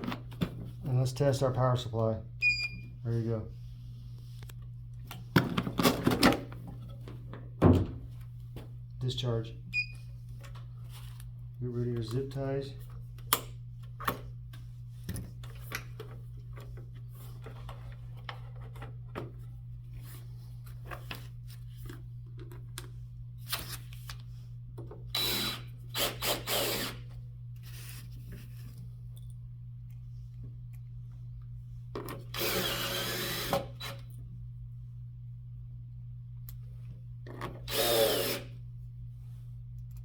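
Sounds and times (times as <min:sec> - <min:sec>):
steady low hum: 0:00.0 - 0:40.0
power drill running: 0:25.1 - 0:27.0, 0:32.3 - 0:34.0, 0:37.6 - 0:38.5.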